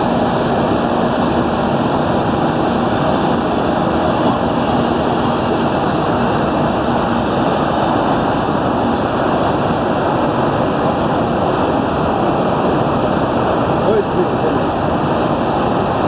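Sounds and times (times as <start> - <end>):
jet engines roaring: 0.0 - 16.0.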